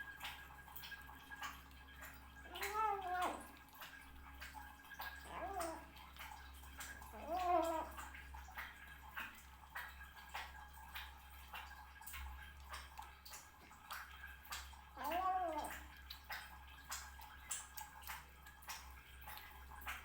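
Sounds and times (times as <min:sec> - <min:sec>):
cat vocal yum sound: 0:02.4 - 0:03.8, 0:05.0 - 0:08.2, 0:15.0 - 0:16.0.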